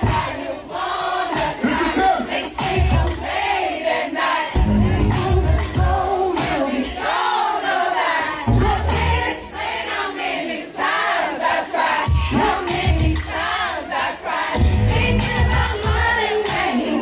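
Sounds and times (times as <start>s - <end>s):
r and b music: 0.0s - 3.6s, 4.5s - 7.1s, 8.4s - 10.0s, 12.0s - 13.7s, 14.6s - 17.0s
crowd singing along: 0.0s - 17.0s.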